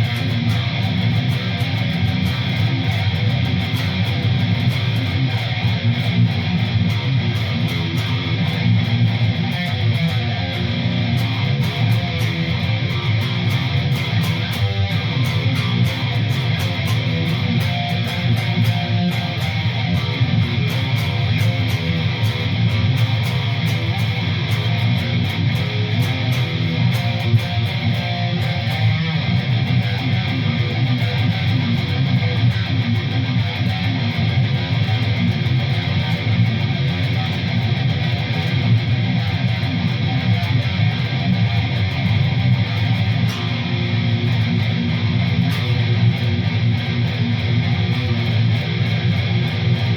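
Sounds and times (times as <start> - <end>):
distorted electric guitar riffing: 0.0 - 49.9.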